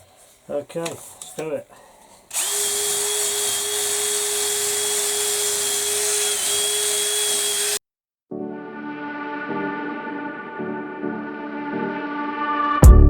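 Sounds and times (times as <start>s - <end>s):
power tool motor whining: 2.3s - 7.8s
music: 8.3s - 13.0s.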